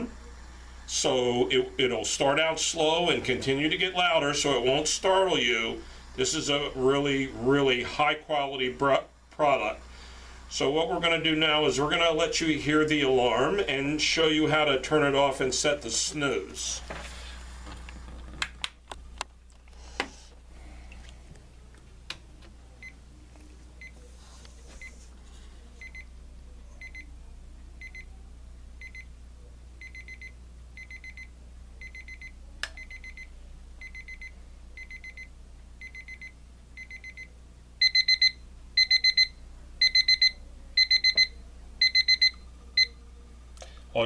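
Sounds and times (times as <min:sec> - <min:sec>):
alarm clock beeping: 0:33.8 - 0:42.9.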